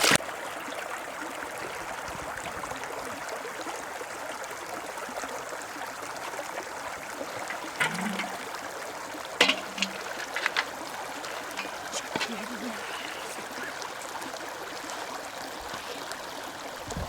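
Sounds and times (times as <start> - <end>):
mountain stream rushing: 4.8 - 17.0.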